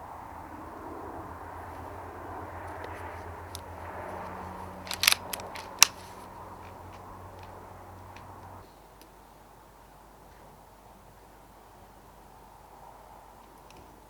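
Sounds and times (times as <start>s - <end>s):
air rifle firing cracks: 3.5s - 6.2s.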